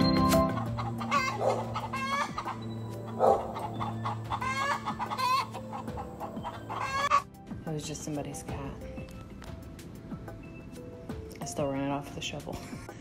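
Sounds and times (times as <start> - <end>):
chickens clucking and cackling: 0.1 - 7.2.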